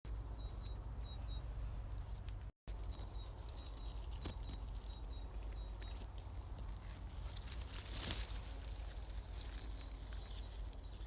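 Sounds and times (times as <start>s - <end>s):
bird chirping: 0.1s - 2.2s, 3.0s - 6.2s.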